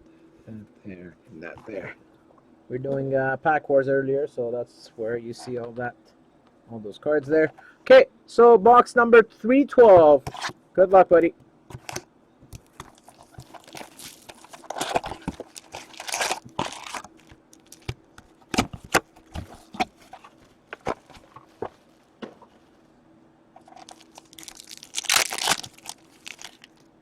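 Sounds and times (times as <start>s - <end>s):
foil wrapper tearing and crinkling: 12.9s - 17.9s, 23.6s - 26.9s.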